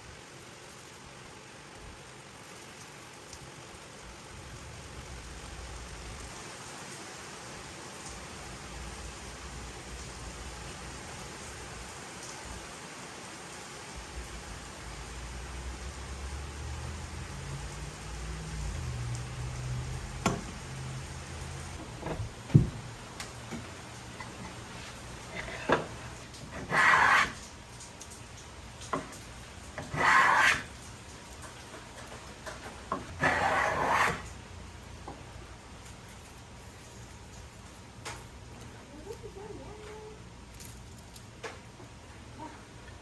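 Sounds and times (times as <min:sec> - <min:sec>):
sharp knocks: 0:21.9 - 0:22.9
hand plane shaving wood: 0:24.2 - 0:27.4, 0:29.8 - 0:30.7, 0:33.0 - 0:34.3.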